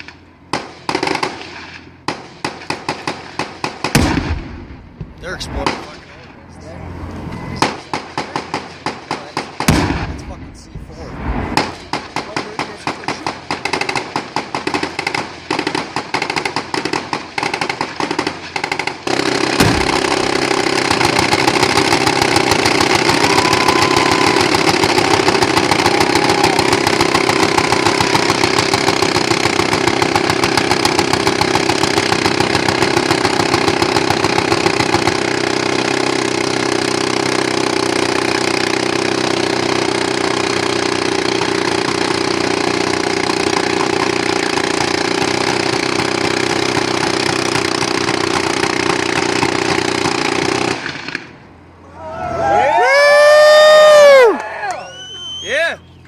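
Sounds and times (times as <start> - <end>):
gunshots in quick succession: 0.0 - 6.1, 7.6 - 10.4, 11.3 - 23.3.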